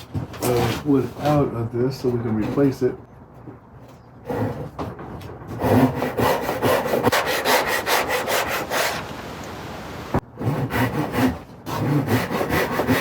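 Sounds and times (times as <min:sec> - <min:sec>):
hand saw cutting wood: 0:05.5 - 0:09.1, 0:10.4 - 0:13.0.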